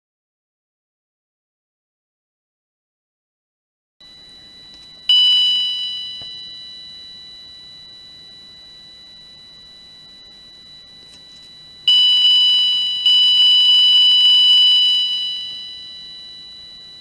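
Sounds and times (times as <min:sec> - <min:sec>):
faint steady high tone: 0:04.0 - 0:17.0
electronic chime: 0:05.0 - 0:08.3, 0:11.4 - 0:17.0.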